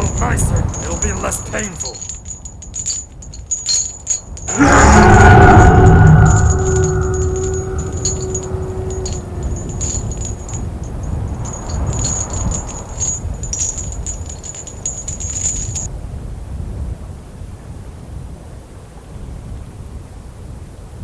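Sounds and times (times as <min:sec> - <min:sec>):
held tone: 0:00.0 - 0:15.9
high tinkling and jingling: 0:00.0 - 0:15.9
low rumble: 0:02.0 - 0:15.9.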